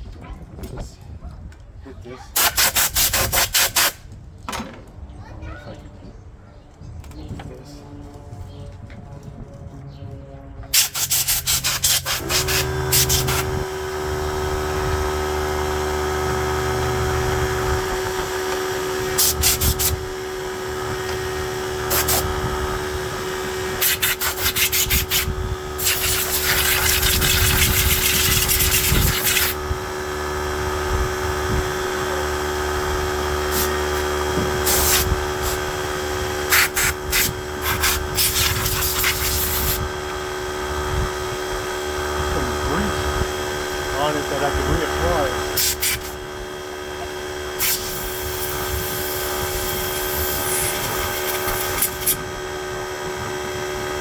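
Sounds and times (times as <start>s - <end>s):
air blow gun hissing: 2.4s - 4.0s, 10.8s - 13.8s, 17.2s - 29.9s, 33.4s - 39.9s, 43.9s - 46.3s, 47.6s - 52.4s
air compressor motor running: 2.4s - 4.6s, 10.7s - 54.0s.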